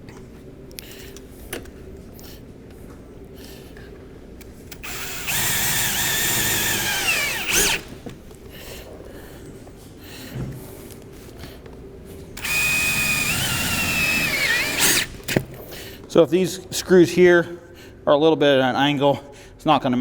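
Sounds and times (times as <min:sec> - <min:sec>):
power drill driving screw: 0:04.7 - 0:08.2, 0:12.4 - 0:15.6.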